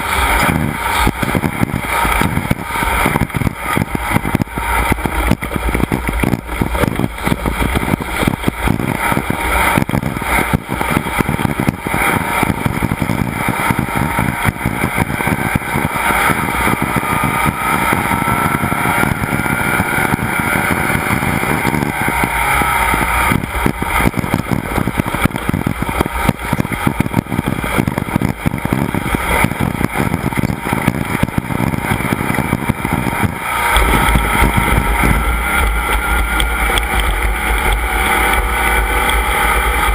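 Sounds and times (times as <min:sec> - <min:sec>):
dense constant clatter: 0:00.0 - 0:39.9
race vehicle engine at speed: 0:00.0 - 0:39.9.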